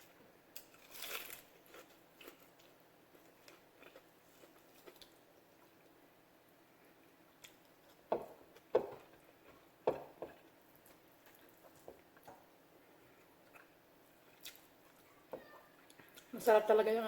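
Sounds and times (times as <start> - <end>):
wet chewing: 0.6 - 5.9, 13.2 - 15.2.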